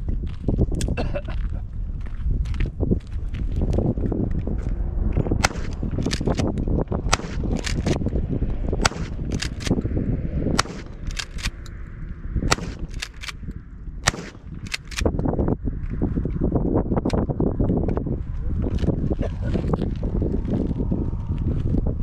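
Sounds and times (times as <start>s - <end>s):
wind rumble on microphone: 0.0s - 22.0s
gunshots: 5.4s - 6.5s, 7.1s - 8.0s, 8.8s - 9.8s, 10.6s - 11.6s, 12.5s - 13.4s, 14.0s - 15.1s.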